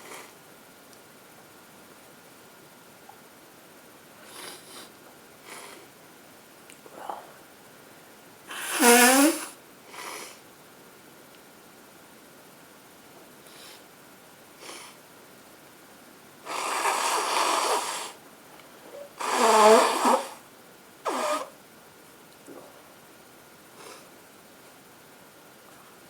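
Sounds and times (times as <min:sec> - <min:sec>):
faint sniffs: 0:04.2 - 0:05.9, 0:08.5 - 0:10.4, 0:13.5 - 0:13.9, 0:16.5 - 0:18.2, 0:23.8 - 0:24.2
snort: 0:04.2 - 0:05.9, 0:08.5 - 0:10.4, 0:16.5 - 0:18.2, 0:19.2 - 0:20.4, 0:21.1 - 0:21.5
woman blowing congested nose: 0:08.5 - 0:10.4, 0:16.5 - 0:18.2, 0:19.2 - 0:20.4, 0:21.0 - 0:21.5.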